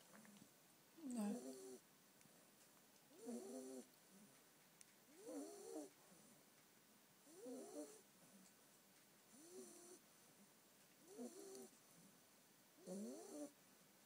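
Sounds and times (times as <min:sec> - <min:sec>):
puppy snoring: 0:01.0 - 0:01.8, 0:03.1 - 0:03.9, 0:05.1 - 0:06.3, 0:07.2 - 0:08.0, 0:09.3 - 0:10.0, 0:11.0 - 0:11.8, 0:12.8 - 0:13.6.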